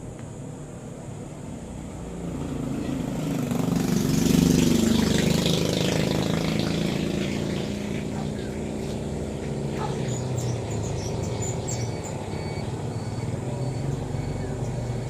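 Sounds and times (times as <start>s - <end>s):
motor running: 4.9s - 15.0s.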